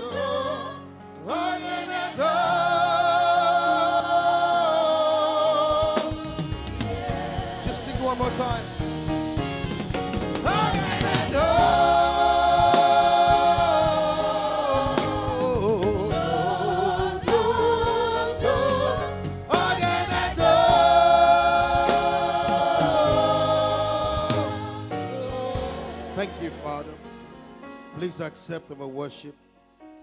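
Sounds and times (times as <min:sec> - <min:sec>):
choir singing gospel song: 0:00.0 - 0:28.3
band playing: 0:00.0 - 0:30.0
drum hits: 0:06.0 - 0:16.4, 0:17.0 - 0:26.6.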